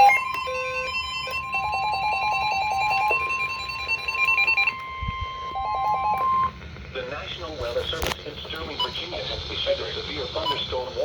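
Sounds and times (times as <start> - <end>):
rapid electronic beeping: 0.0 - 6.6
steady warning alarm tone: 0.0 - 6.6.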